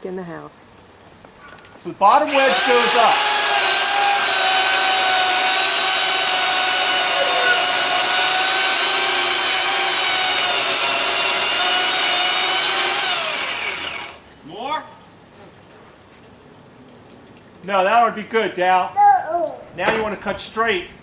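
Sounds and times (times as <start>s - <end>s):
electric saw motor whining: 2.2s - 14.2s.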